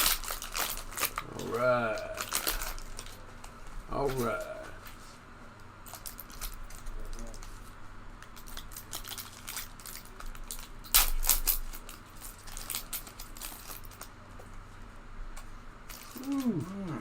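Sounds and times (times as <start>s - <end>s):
foil wrapper crinkling and tearing: 0.0s - 1.2s, 2.0s - 3.2s, 5.9s - 7.6s, 8.3s - 14.1s, 15.9s - 16.6s.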